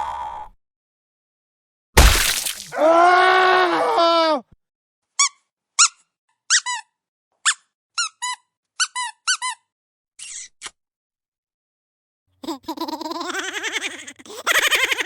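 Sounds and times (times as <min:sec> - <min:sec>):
squeaky rubber dog toy: 0:05.2 - 0:09.7.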